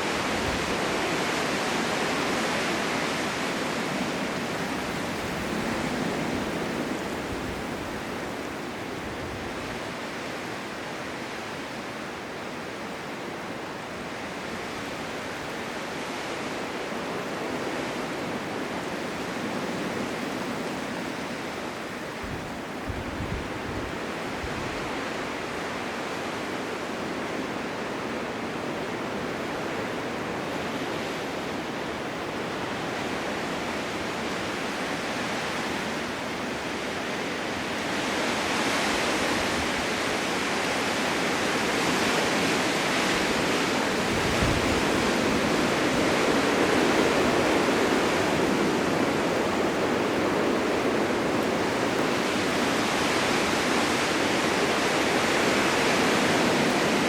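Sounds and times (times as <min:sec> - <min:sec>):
blizzard wind blowing: 0:00.0 - 0:57.0.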